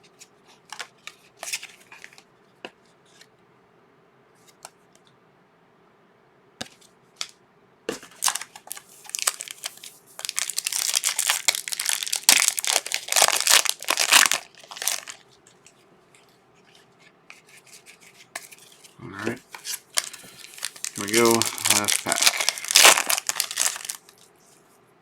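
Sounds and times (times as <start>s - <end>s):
foil wrapper crinkling: 8.1s - 15.2s, 19.5s - 24.3s.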